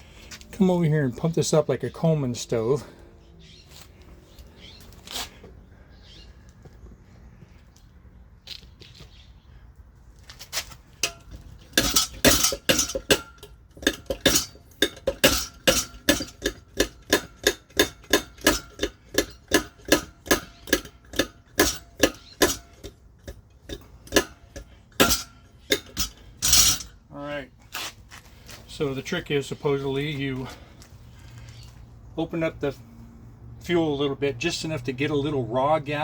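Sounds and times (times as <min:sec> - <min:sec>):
hand pump metallic clicking: 0:11.0 - 0:27.0.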